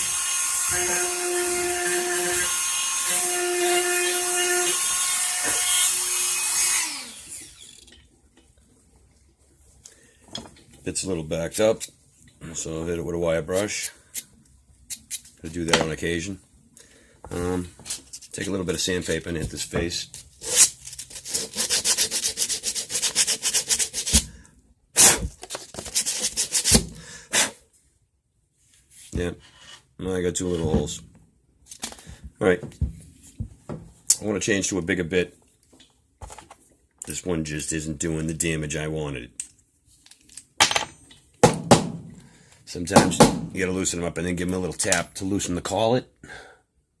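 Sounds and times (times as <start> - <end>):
rotary tool carving wood: 0.0 - 7.8, 20.5 - 24.3
sandpaper scraping wood: 20.4 - 24.3, 25.0 - 27.6.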